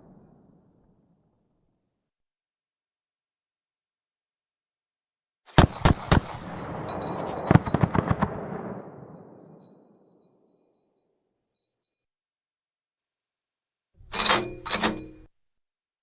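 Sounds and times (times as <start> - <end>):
rolling echo: 0.0 - 1.3, 5.6 - 10.7
cannon firing bursts: 5.5 - 10.0.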